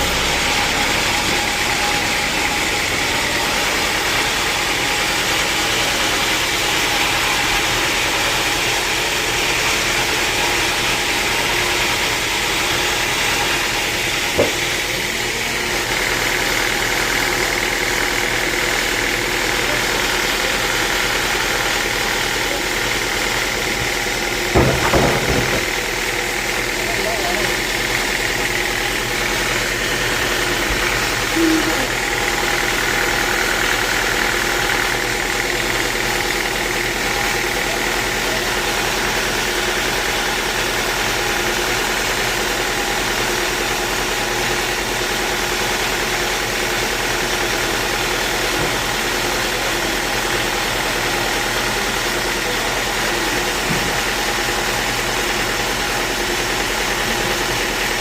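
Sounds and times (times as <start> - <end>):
high machine whine: 0.0 - 58.0
sawmill machine drone: 0.0 - 58.0
short knock: 14.3 - 14.7.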